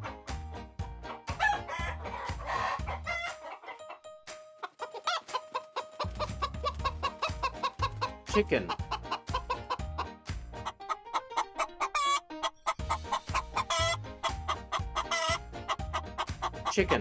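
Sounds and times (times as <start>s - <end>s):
children's music with steady beat: 0.0s - 17.0s
hen clucks: 1.1s - 17.0s
rooster crowing: 1.4s - 3.8s.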